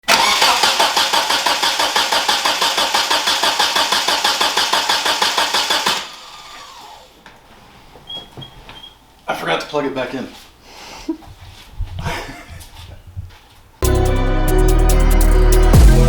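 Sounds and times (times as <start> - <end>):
car engine cranking: 0.0 - 7.0.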